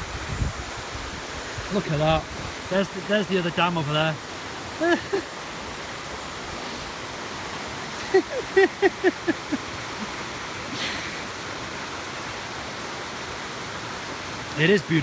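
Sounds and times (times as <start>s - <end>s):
steady rushing noise: 0.0s - 15.0s
man laughing: 4.8s - 5.4s, 8.0s - 10.1s
faint breath: 10.7s - 11.3s.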